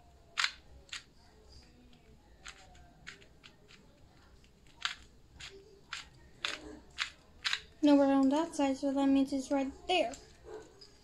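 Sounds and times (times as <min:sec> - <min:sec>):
puzzle cube plastic clicks: 0:00.3 - 0:07.8.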